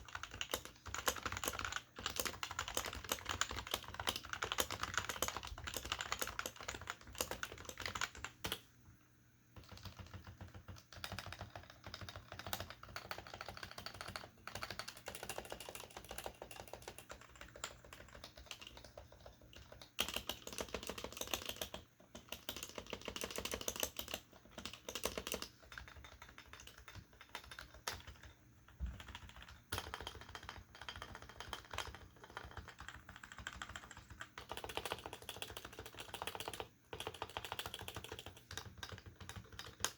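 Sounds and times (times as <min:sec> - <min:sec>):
fast keyboard typing: 0:00.0 - 0:08.7, 0:09.6 - 0:39.9.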